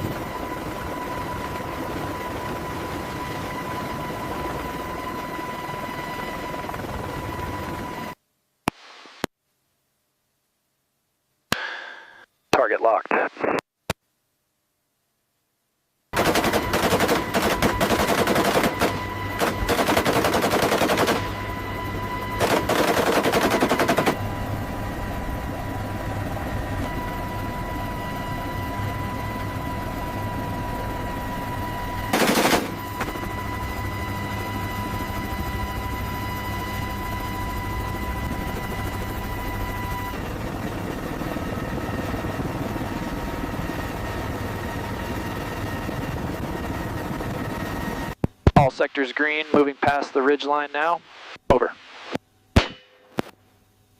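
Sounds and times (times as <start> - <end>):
gatling gun firing in bursts: 16.2 - 21.4, 22.4 - 24.2, 32.1 - 32.8
engine drone with high whine: 16.4 - 45.9.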